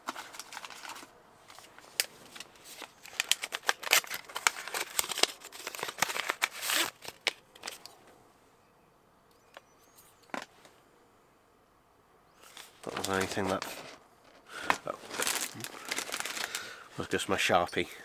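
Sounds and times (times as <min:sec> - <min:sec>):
plastic packet crinkling: 0:00.0 - 0:07.9, 0:12.4 - 0:17.4.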